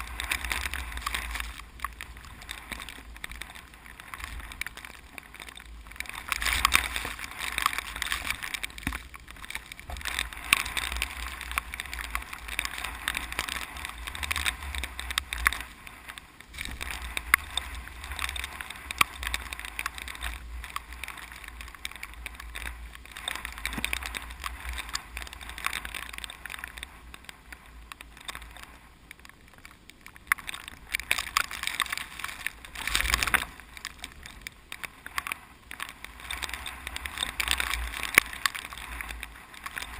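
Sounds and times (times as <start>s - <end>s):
wind hissing through plants: 0.0s - 29.6s
wind rumbling on microphone: 0.0s - 39.9s.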